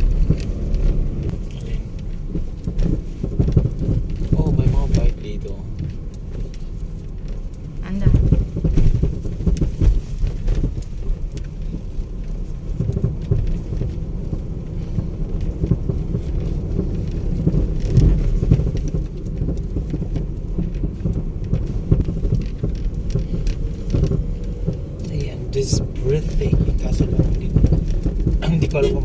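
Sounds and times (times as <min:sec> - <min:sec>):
vehicle road rumble: 0:00.0 - 0:29.0.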